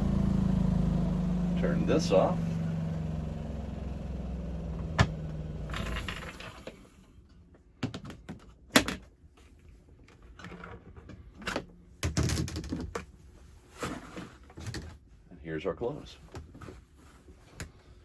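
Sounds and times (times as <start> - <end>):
knocks and clatters: 4.8 - 6.7.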